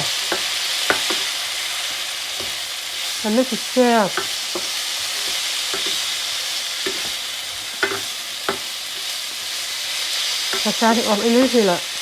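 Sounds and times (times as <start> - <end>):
food sizzling in hot oil: 0.0 - 12.0
spatula knocking against pan: 0.3 - 1.4, 2.3 - 2.6, 3.6 - 6.1, 6.8 - 9.1, 10.5 - 10.8.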